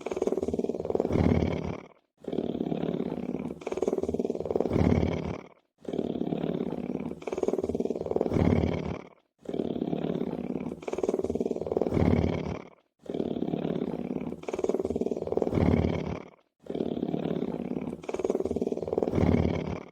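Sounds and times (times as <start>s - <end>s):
lion purring: 0.0s - 19.9s.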